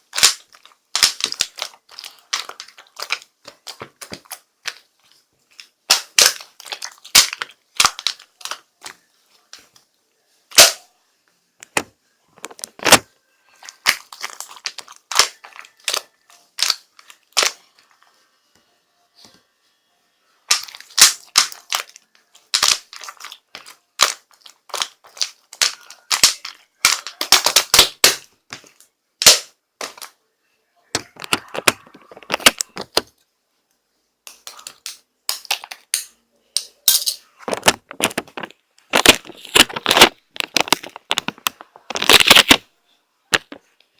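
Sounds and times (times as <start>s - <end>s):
rapid sharp clicks and cracks: 20.5s - 28.2s.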